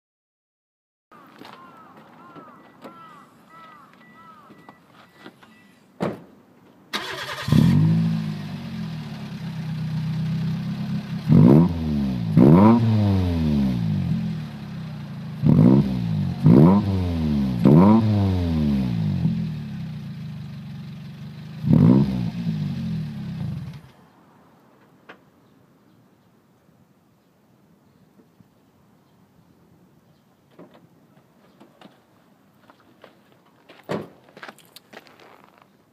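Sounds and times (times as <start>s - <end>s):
car engine idling and revving: 7.0s - 23.9s.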